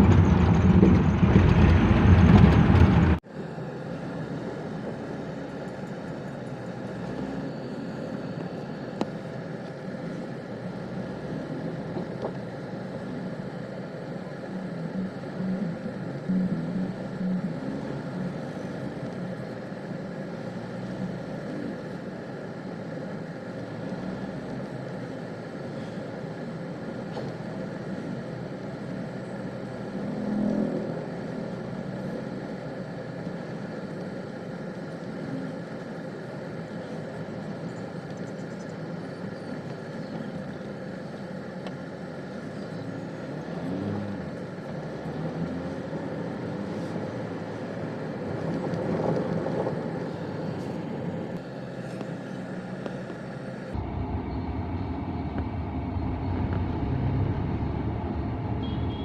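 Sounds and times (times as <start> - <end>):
heavy low rumble: 0.0 - 3.2, 48.2 - 59.0
vehicle engine and road noise: 0.0 - 59.0.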